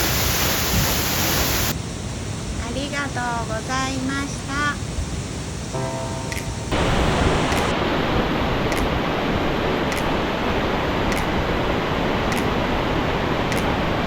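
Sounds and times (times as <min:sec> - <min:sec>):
waterfall rushing: 0:00.0 - 0:01.7, 0:05.8 - 0:14.0.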